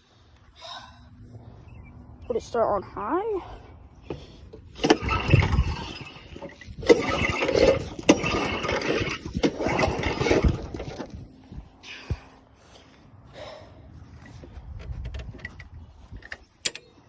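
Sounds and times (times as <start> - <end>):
lawnmower recoil starter cranking: 4.5 - 11.3, 15.0 - 16.9.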